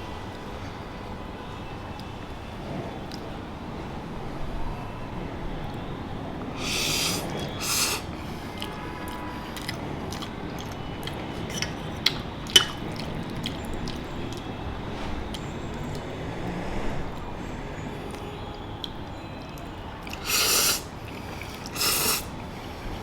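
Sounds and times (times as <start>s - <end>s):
person slurping noodles: 6.6s - 9.7s, 20.1s - 22.4s
wet chewing smacks: 6.6s - 14.5s, 18.8s - 22.6s.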